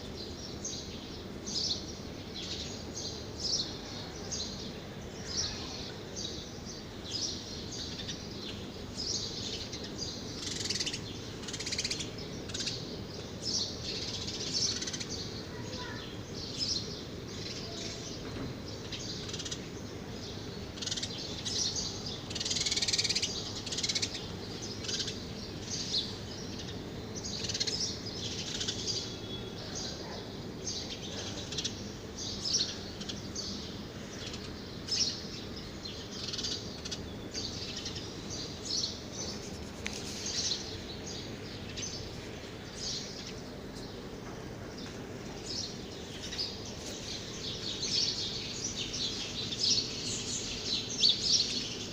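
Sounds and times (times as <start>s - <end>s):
small birds chirping: 0.0s - 51.9s.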